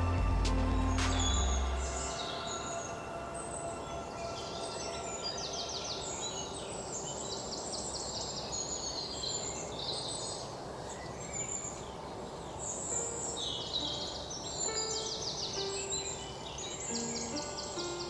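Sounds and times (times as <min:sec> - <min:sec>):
steady background hiss: 0:00.0 - 0:18.0
birds singing and chirping: 0:12.5 - 0:18.0.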